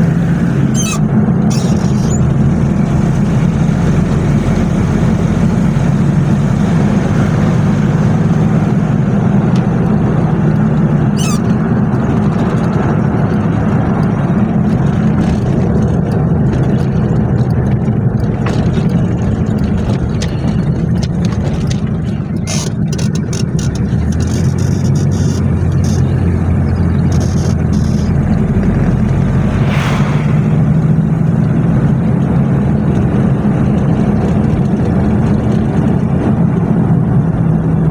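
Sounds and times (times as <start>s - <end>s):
diesel engine clattering: 0.0s - 37.9s
sharp clicks: 10.6s - 30.5s.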